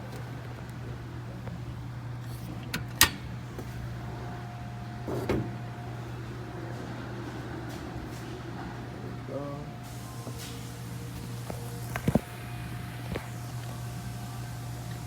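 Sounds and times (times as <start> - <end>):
hood latch clicking: 2.3 - 3.3.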